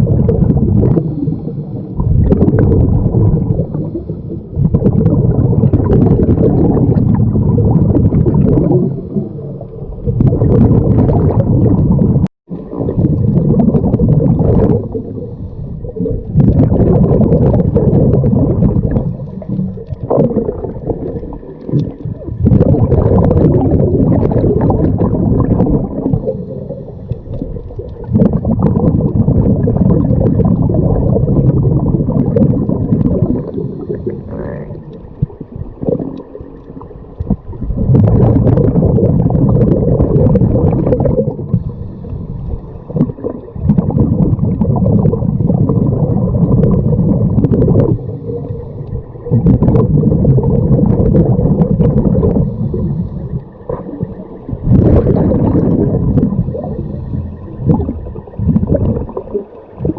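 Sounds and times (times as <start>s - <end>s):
exhaled bubbles gurgling underwater: 0.0s - 59.9s
diver inhaling through regulator: 0.9s - 2.0s, 3.5s - 4.6s, 14.8s - 16.0s, 26.0s - 27.4s, 33.2s - 34.9s, 41.5s - 43.0s, 47.8s - 49.2s, 52.2s - 53.8s, 56.4s - 57.6s.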